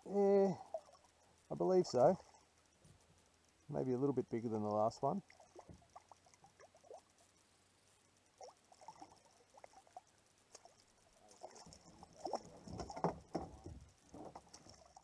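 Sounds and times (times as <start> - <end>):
water splashing against kayak: 8.4 - 15.0.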